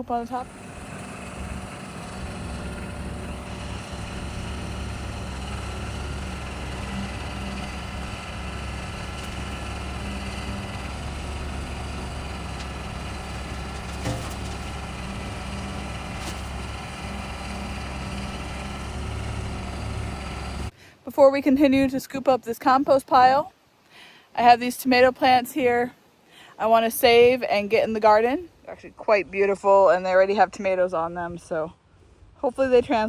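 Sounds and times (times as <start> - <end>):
tractor diesel engine running: 0.0 - 20.7.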